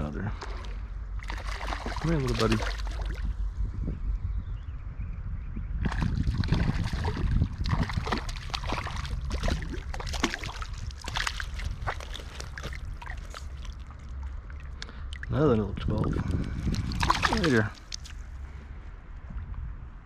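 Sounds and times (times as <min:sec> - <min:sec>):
water splashing and sloshing: 0:00.0 - 0:03.5, 0:05.8 - 0:18.8
steady low rumble: 0:00.0 - 0:20.0.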